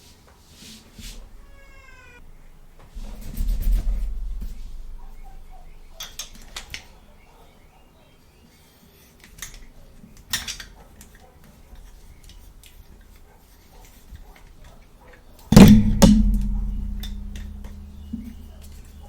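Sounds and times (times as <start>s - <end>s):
loud ringing knock: 15.6s - 19.0s.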